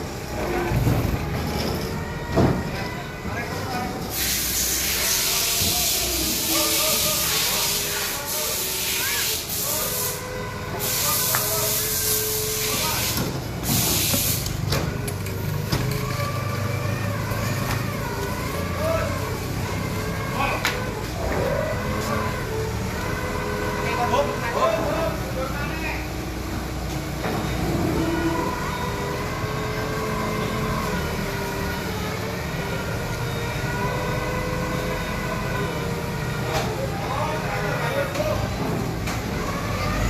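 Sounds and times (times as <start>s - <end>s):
forklift engine running: 0.0s - 40.0s
burst of hiss: 4.1s - 10.2s, 10.8s - 14.5s.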